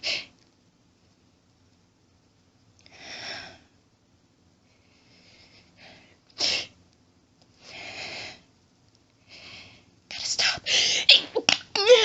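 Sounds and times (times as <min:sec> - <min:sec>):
breathy breaths: 0:07.5 - 0:08.5, 0:09.2 - 0:10.0.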